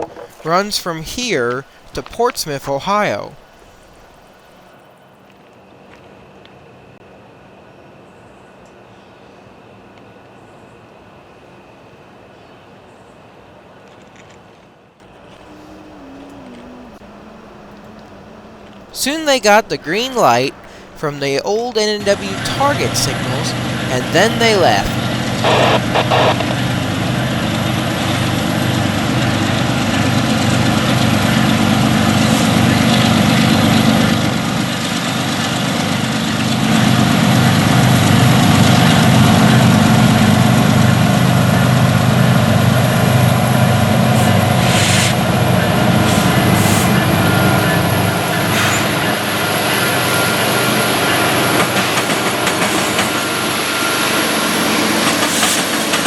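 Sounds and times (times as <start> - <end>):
diesel locomotive engines droning: 0.0 - 4.7, 15.3 - 56.0
wheels clicking on rails: 15.4 - 34.3, 44.1 - 56.0.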